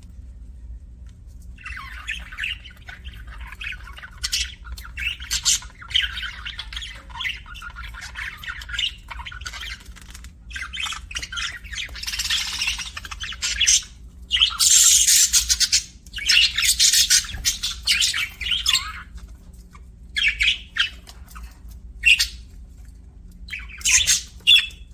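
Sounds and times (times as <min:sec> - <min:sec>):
faint low hum: 0:00.0 - 0:24.9
budgie chattering and squawking: 0:01.6 - 0:19.2.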